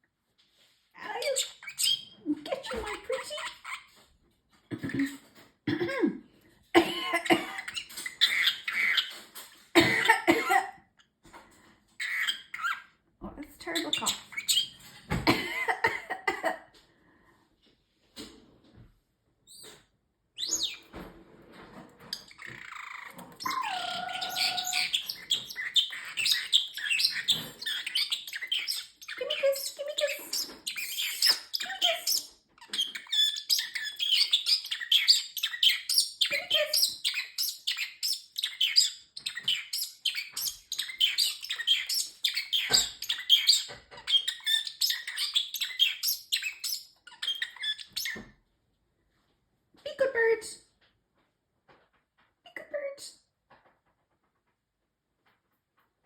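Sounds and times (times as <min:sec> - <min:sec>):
parrot chirping and chattering: 0:00.6 - 0:04.1, 0:07.1 - 0:10.6, 0:11.9 - 0:15.0, 0:19.4 - 0:19.8, 0:20.4 - 0:48.3
parrot whistled note: 0:23.4 - 0:24.8.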